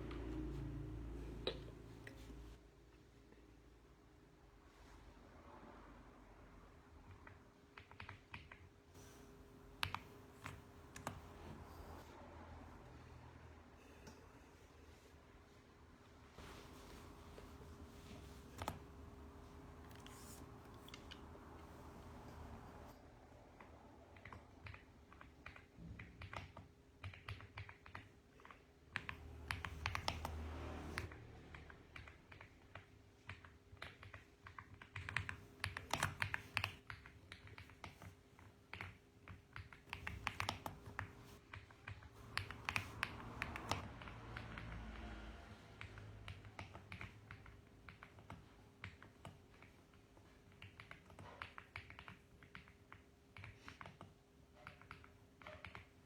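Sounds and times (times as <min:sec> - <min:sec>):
faint steady hum: 0:00.0 - 0:56.0
mechanical keyboard typing: 0:07.1 - 0:08.7, 0:09.8 - 0:11.4, 0:23.6 - 0:45.2, 0:45.8 - 0:56.0.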